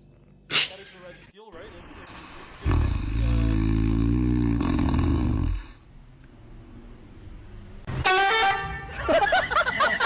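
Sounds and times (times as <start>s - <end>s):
low drawn-out growling: 2.1s - 5.8s.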